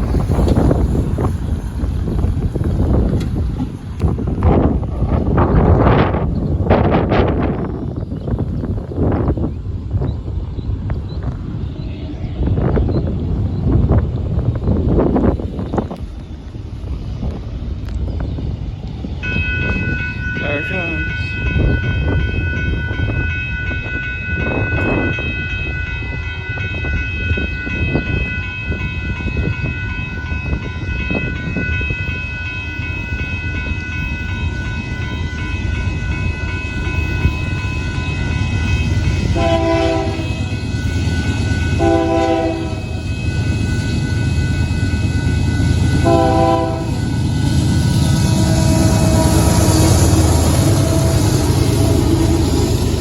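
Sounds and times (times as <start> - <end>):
freight train rumbling past: 0.0 - 53.0
locomotive horn blasts: 39.2 - 40.8, 41.6 - 43.4, 46.0 - 47.1, 48.2 - 52.3.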